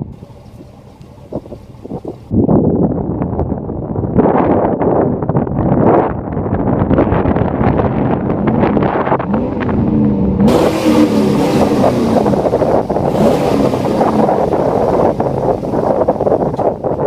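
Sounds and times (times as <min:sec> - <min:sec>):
wind noise on microphone: 0:00.0 - 0:17.0
truck engine revving past: 0:08.5 - 0:16.0.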